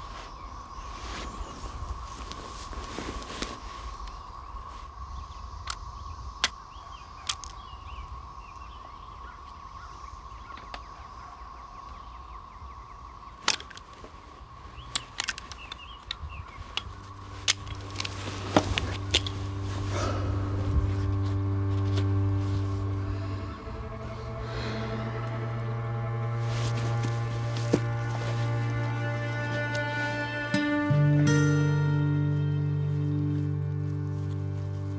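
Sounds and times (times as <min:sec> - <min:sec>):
high insect drone: 0:00.0 - 0:34.9
low wind rumble: 0:00.0 - 0:34.9
faint bird chirps: 0:03.5 - 0:29.9
low music drone: 0:17.0 - 0:34.9.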